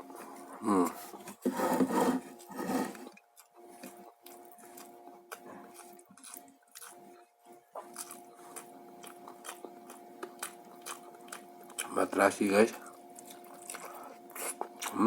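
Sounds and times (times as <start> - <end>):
faint steady hum: 0.0 - 15.0
person chewing food: 2.4 - 12.1, 12.8 - 15.0.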